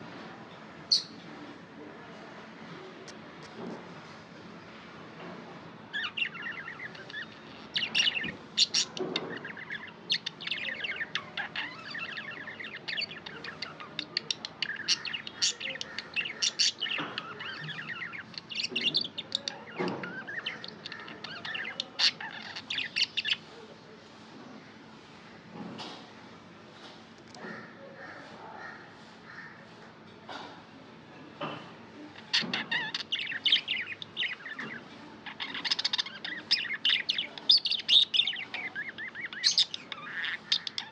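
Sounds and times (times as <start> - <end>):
budgies chirping and warbling: 5.9 - 23.6, 32.1 - 40.9.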